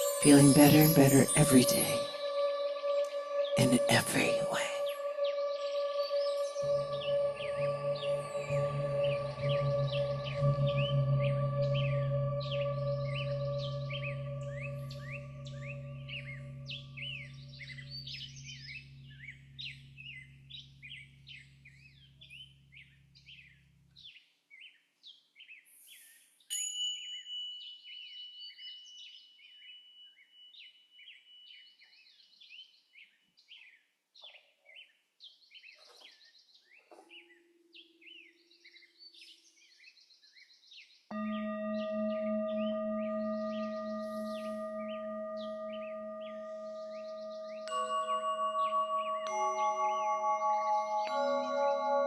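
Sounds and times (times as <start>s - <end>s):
high clear ringing tone: 0.0s - 22.6s, 41.1s - 52.0s
low steady drone: 0.0s - 23.9s, 41.1s - 52.0s
singing bowl tone: 0.0s - 23.9s, 41.1s - 52.0s
birds chirping: 0.0s - 24.8s, 27.7s - 52.0s.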